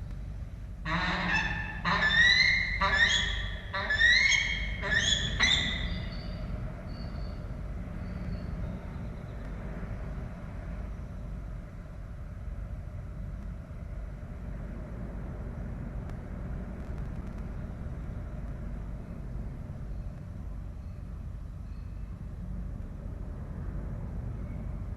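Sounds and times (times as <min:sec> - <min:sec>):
steady low rumble: 0:00.0 - 0:24.9
falcon call: 0:00.9 - 0:06.3.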